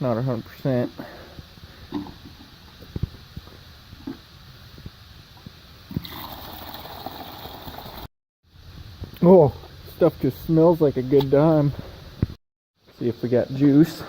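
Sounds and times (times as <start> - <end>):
liquid pouring into bucket: 5.9 - 8.1.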